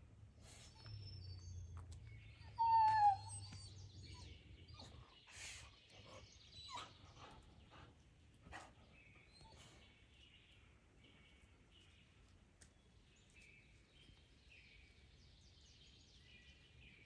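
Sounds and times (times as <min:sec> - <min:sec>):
bird whistling and chirping: 0:02.5 - 0:04.4.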